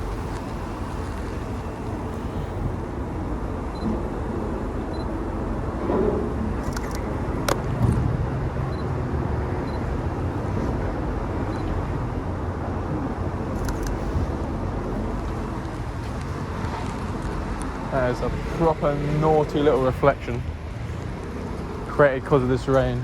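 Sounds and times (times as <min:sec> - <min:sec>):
low rumble of road traffic: 0:00.0 - 0:23.0
camera shutter clicks: 0:06.6 - 0:07.6, 0:13.6 - 0:14.0.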